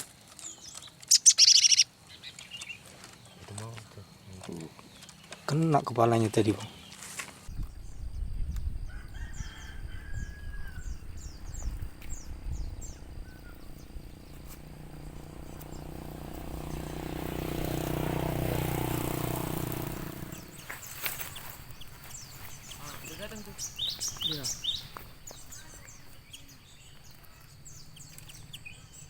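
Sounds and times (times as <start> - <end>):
small bird chirping: 0.4 - 29.0
low rumble: 10.2 - 20.9
passing vehicle engine: 11.0 - 25.7.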